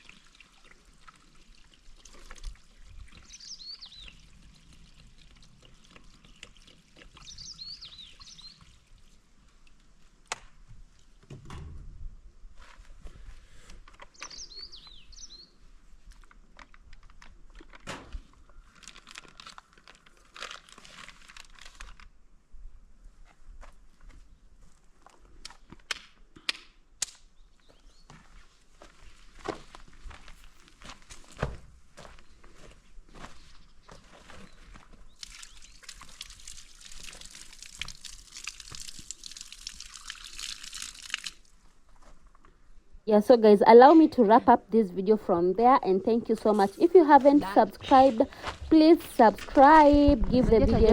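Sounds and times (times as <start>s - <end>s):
water running and splashing: 0.0s - 9.2s, 35.2s - 41.6s
bird chirping: 3.2s - 4.2s, 7.2s - 8.7s, 14.1s - 15.6s
crackling and rustling clicks: 16.1s - 22.1s.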